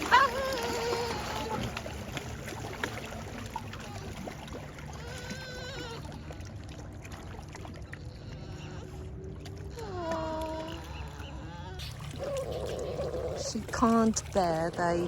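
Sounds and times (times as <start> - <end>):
dog whining: 0.0 - 1.6, 9.7 - 13.6.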